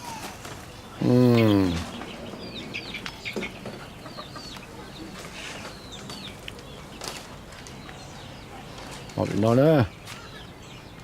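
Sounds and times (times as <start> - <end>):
chicks peeping: 0.0 - 11.0.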